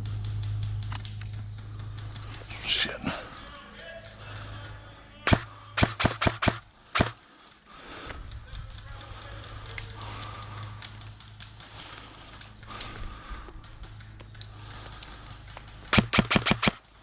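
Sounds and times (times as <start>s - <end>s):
airsoft guns firing: 5.3s - 7.2s, 15.9s - 17.0s.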